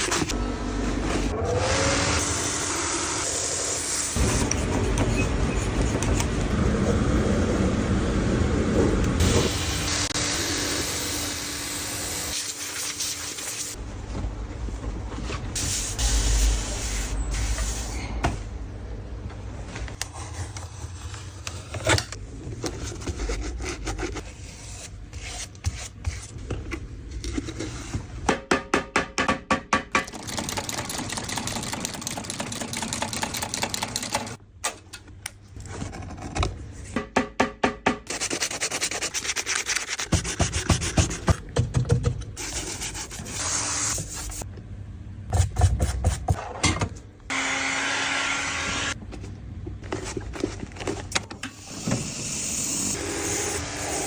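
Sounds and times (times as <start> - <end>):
sanding and rasping leather: 38.1 - 41.3.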